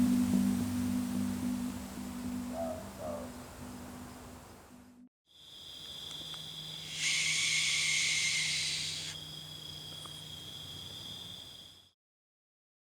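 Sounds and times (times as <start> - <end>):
insects trilling: 5.3 - 11.9
owl hissing screech: 6.8 - 9.3.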